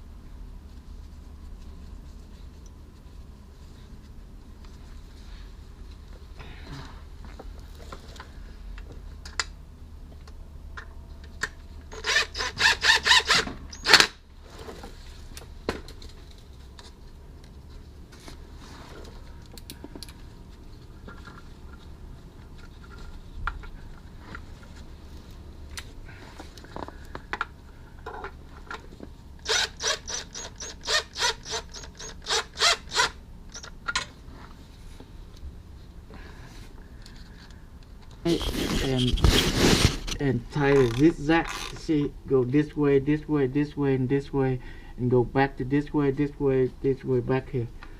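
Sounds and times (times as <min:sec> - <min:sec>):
socket ratchet clicking: 0:29.4 - 0:33.8.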